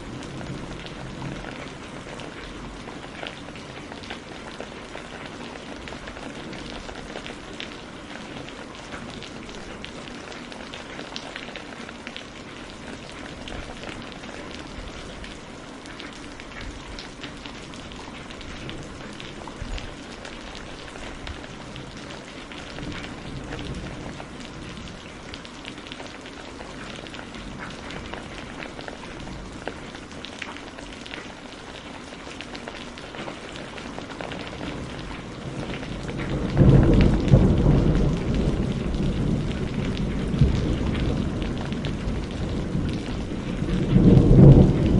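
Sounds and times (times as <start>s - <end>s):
rain falling: 0.0s - 44.9s
deep thunder rumble: 34.6s - 44.9s.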